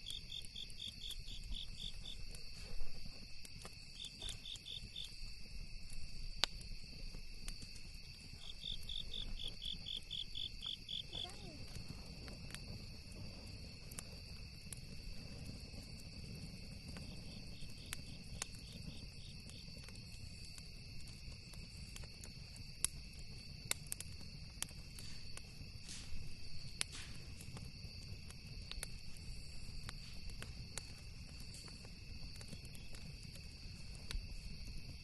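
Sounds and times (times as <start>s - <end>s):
campfire crackles: 0.0s - 35.0s
crickets trilling: 0.0s - 35.0s.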